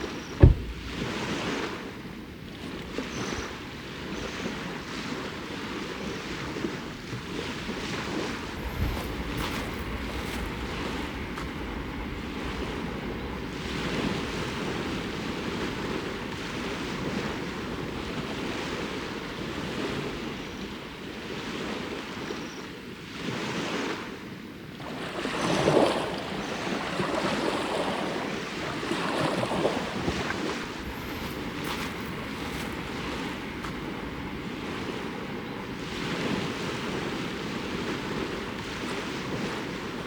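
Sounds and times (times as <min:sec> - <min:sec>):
wind buffeting microphone: 0:00.0 - 0:22.3, 0:24.8 - 0:40.0
small waves washing ashore: 0:00.0 - 0:40.0.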